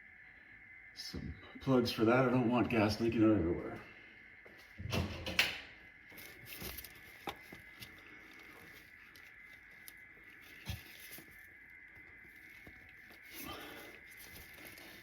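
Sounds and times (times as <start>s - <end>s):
faint steady high tone: 0.0s - 4.7s
rustling handling noises: 6.0s - 15.0s.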